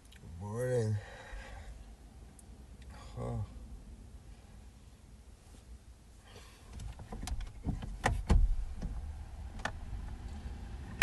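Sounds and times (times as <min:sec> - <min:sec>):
low steady rumble: 0:00.0 - 0:11.0
clicks and knocks in car: 0:06.7 - 0:09.0.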